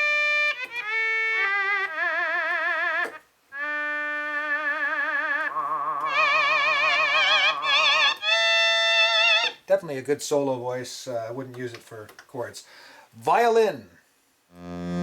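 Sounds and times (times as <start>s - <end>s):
low held synth note: 14.6s - 15.0s
synthesizer melody with vibrato: 14.6s - 15.0s.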